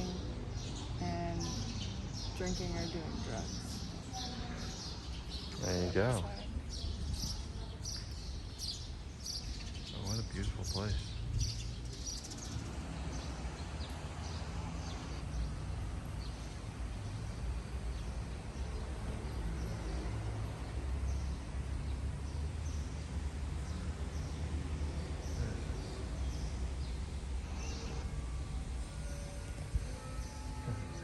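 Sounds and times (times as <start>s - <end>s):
birds chirping: 0.0s - 31.0s.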